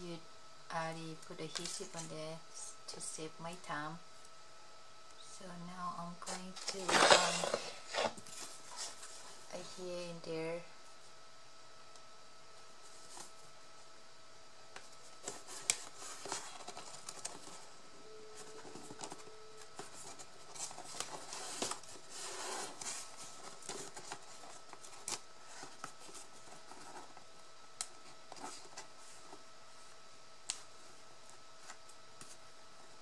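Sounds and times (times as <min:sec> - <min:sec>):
paper and cardboard handling: 0:06.2 - 0:09.4, 0:14.8 - 0:17.7, 0:18.3 - 0:27.3
paper crackling: 0:14.7 - 0:17.7, 0:18.4 - 0:29.4.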